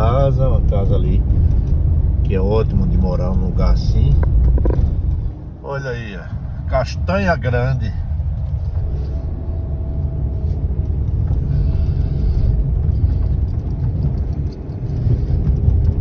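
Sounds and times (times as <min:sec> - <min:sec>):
light clicks and rattles: 0:00.0 - 0:05.4, 0:10.4 - 0:16.0
vehicle engine and tyres rumbling: 0:00.0 - 0:16.0.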